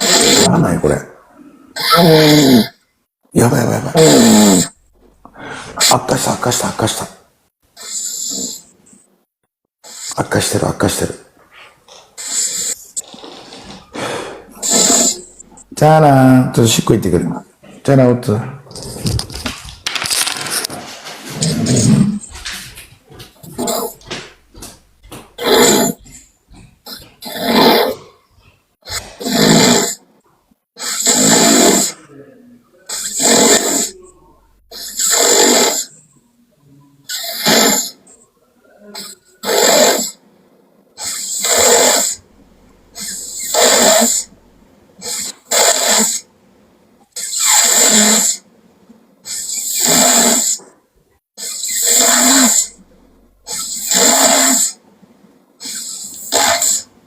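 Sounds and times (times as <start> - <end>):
person snoring: 0.0 - 0.6, 1.7 - 2.8, 3.8 - 4.8, 12.2 - 15.5, 21.4 - 22.3, 28.9 - 30.0, 30.8 - 32.0, 32.9 - 35.9, 43.0 - 44.3, 49.3 - 50.6, 51.4 - 52.8, 55.6 - 56.9.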